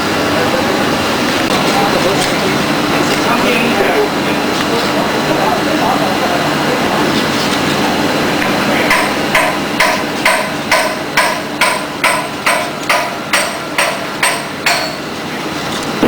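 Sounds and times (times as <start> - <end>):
steady machine hum: 0.0 - 16.0
hammer striking metal: 8.9 - 15.2.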